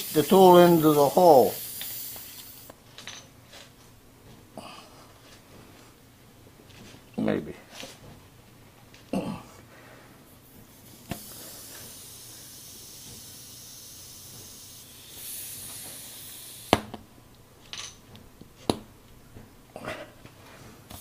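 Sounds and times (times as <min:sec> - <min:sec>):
air hissing from tire puncture: 0:00.0 - 0:02.7, 0:10.6 - 0:16.9.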